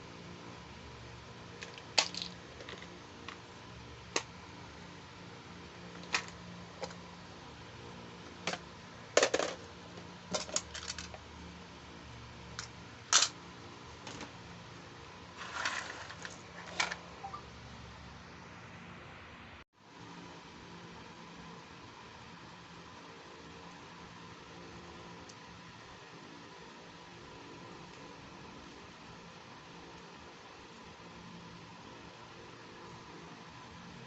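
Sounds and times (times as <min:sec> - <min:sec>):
faint steady hum: 0:00.0 - 0:34.0
plastic pieces clicking: 0:01.6 - 0:02.9.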